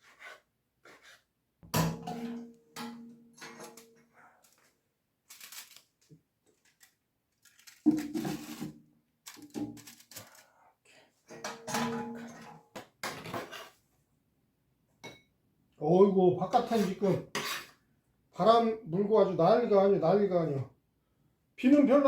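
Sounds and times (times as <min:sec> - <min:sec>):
utensils and bowls clinking: 0:11.3 - 0:12.6.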